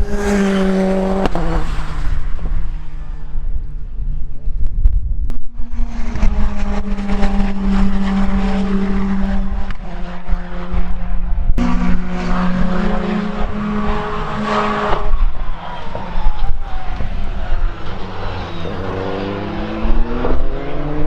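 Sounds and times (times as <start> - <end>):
race car engine running hard: 5.5 - 21.0.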